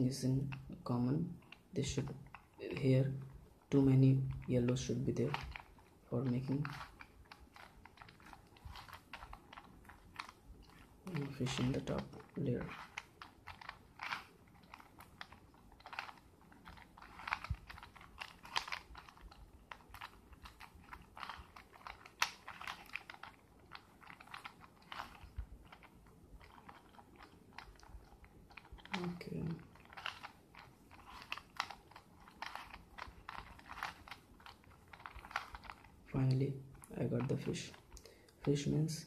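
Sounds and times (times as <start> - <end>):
plastic cube clicking: 4.0 - 36.1.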